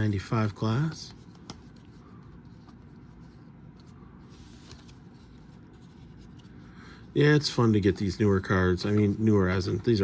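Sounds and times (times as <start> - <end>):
trading cards rustling: 0.0 - 6.7.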